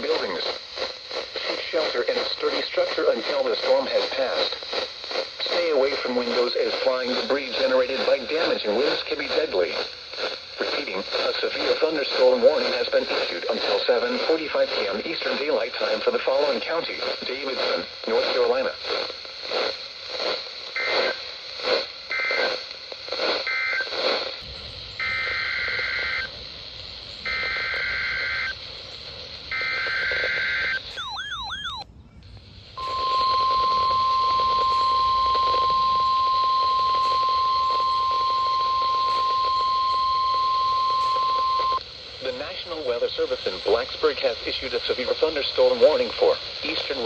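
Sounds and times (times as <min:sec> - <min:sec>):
two-pitch data bursts: 0:23.4 - 0:28.6, 0:29.4 - 0:31.8, 0:32.7 - 0:42.9
steady warning alarm tone: 0:24.9 - 0:26.4, 0:27.2 - 0:28.6, 0:29.5 - 0:31.8, 0:32.8 - 0:41.8.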